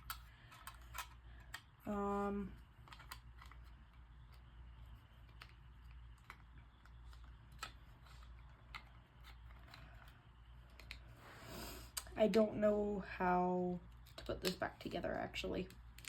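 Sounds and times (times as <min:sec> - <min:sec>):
plastic parts clicking: 0:00.0 - 0:01.7, 0:02.8 - 0:04.4, 0:05.2 - 0:11.0
low steady hum: 0:00.0 - 0:16.0.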